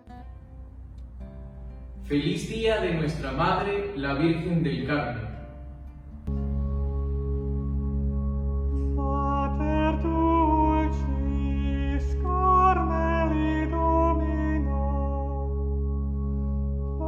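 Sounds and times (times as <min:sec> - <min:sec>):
held low chord: 0:05.6 - 0:17.0
slow melody of long notes: 0:06.0 - 0:17.0.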